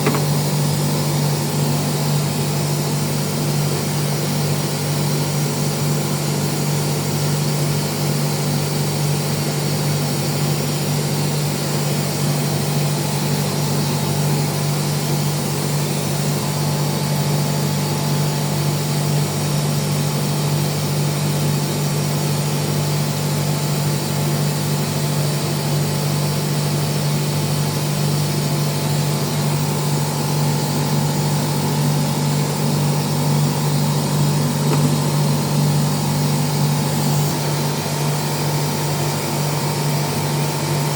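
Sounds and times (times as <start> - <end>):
air compressor running: 0.0 - 40.9.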